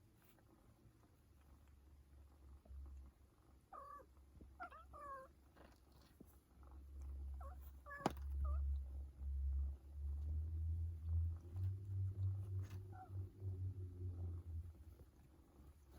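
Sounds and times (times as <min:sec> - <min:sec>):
low rumble: 0:07.0 - 0:15.9.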